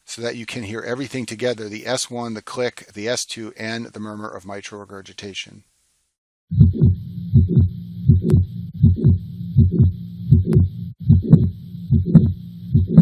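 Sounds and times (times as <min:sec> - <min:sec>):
heart murmur: 0:06.5 - 0:13.0
heartbeat lub-dub: 0:06.5 - 0:13.0.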